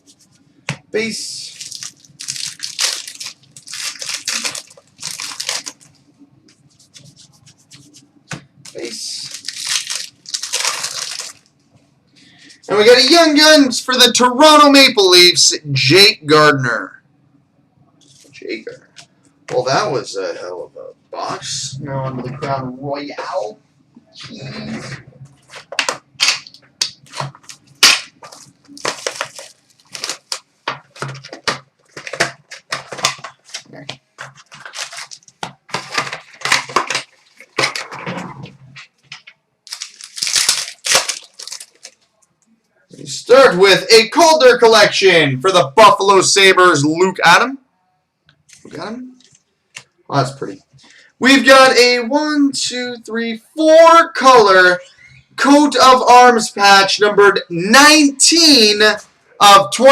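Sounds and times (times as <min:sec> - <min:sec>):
packaging being torn open: 0:01.5 - 0:05.8, 0:08.7 - 0:11.5, 0:25.6 - 0:38.0, 0:39.7 - 0:42.0.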